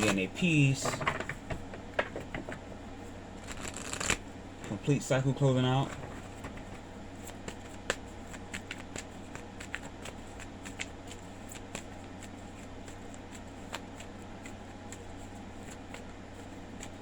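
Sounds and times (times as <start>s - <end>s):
steady low hum: 0.0s - 17.0s
cards being shuffled: 3.4s - 4.8s, 5.7s - 17.0s.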